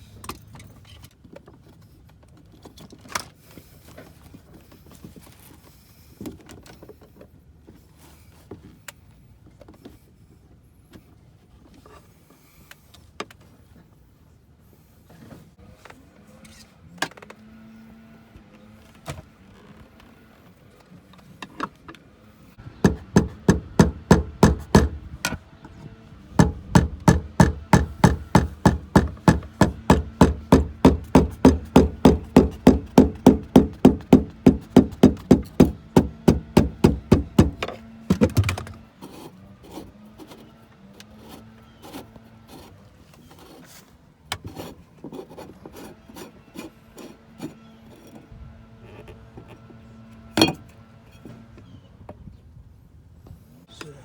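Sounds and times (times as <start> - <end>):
quick hammer taps: 22.8 - 25.0, 26.4 - 38.7.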